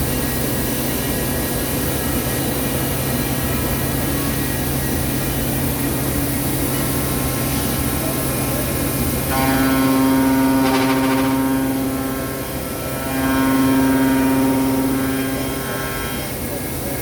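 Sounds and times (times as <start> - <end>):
machine steady hum: 0.0 - 17.0
high-pitched spindle whine: 9.2 - 17.0.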